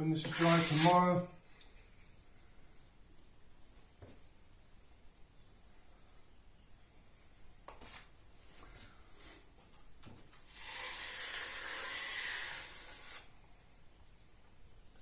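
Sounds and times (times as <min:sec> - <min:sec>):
filling knife scraping drywall: 0:00.2 - 0:01.2, 0:10.5 - 0:13.3.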